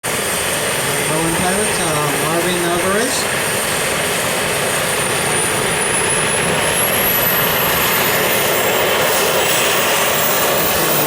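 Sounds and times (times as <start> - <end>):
high turbine whine: 0.0 - 11.0
jet turbine engine rushing: 0.0 - 11.0.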